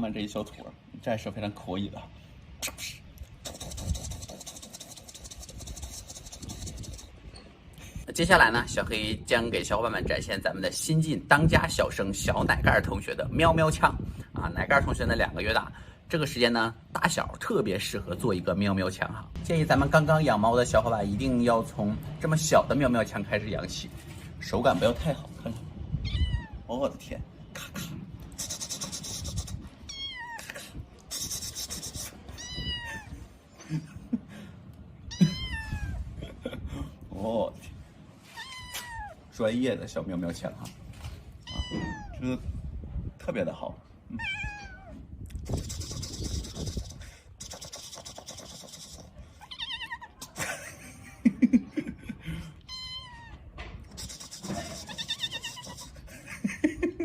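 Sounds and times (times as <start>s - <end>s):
scratchy rubbing noise: 3.4s - 7.2s, 28.3s - 29.7s, 31.1s - 32.3s, 45.4s - 49.2s, 53.9s - 56.0s
man's low voice: 8.0s - 17.0s, 42.1s - 44.2s
kitten meowing: 26.0s - 26.7s, 29.8s - 30.5s, 32.3s - 33.2s, 35.0s - 36.1s, 38.3s - 39.2s, 41.4s - 42.2s, 44.2s - 45.0s, 49.4s - 50.3s, 52.6s - 53.5s, 54.4s - 56.0s.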